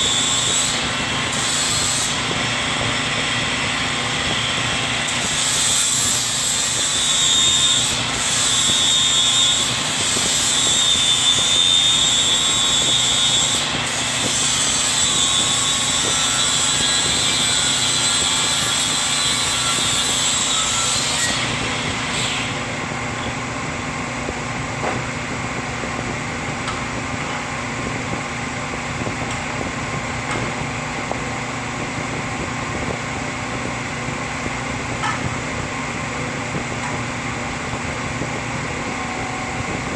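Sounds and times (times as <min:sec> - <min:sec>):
angle grinder whine: 0:00.0 - 0:31.1.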